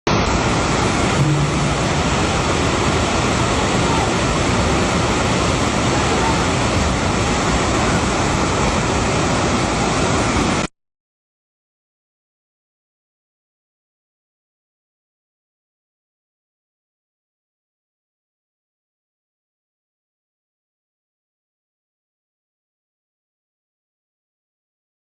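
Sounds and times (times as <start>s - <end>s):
floodwater rushing: 0.1s - 10.7s.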